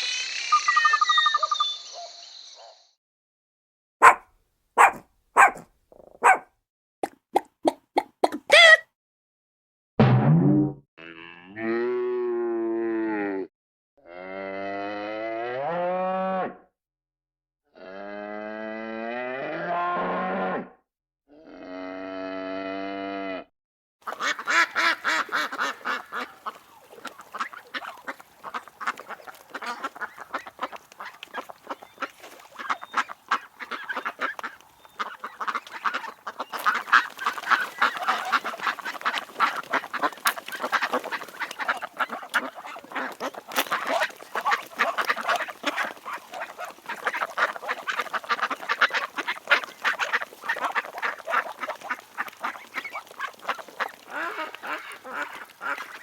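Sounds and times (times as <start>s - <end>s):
ducks quacking: 24.0s - 56.0s.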